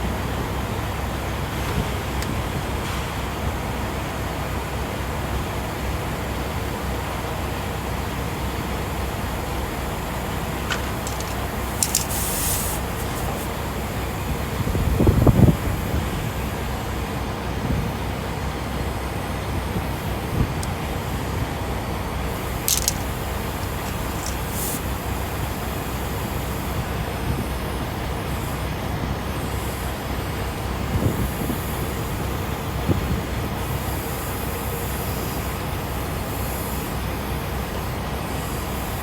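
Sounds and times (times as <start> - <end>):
vehicle traffic rumble: 9.3 - 27.6
air hisses: 10.6 - 14.0, 22.3 - 26.7.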